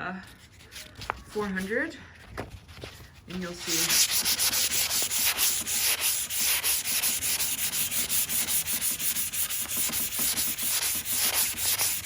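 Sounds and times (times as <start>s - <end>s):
sandpaper rubbing on wood: 3.3s - 12.0s.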